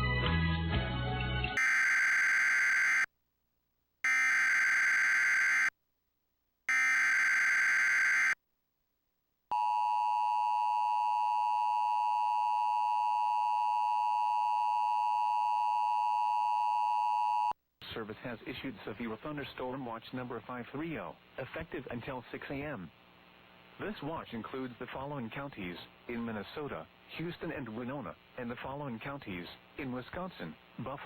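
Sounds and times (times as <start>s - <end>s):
music: 0.0s - 1.6s
two-tone attention signal: 6.7s - 8.4s.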